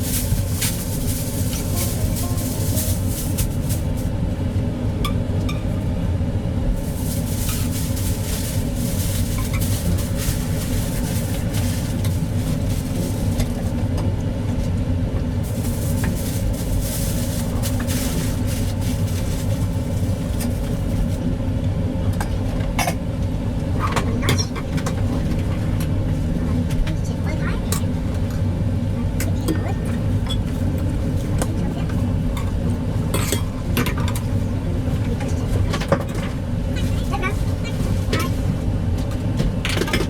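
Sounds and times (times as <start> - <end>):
low machine hum and rumble: 0.0 - 40.0.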